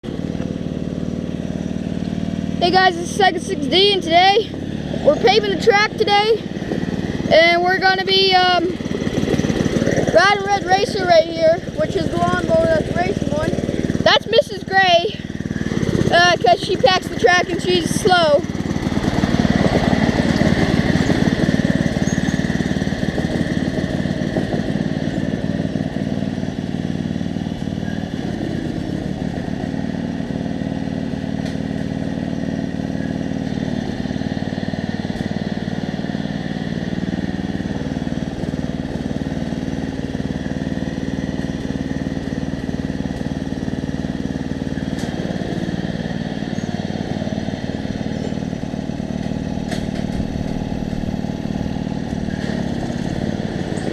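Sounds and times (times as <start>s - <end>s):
riding lawn mower engine: 0.0s - 53.9s.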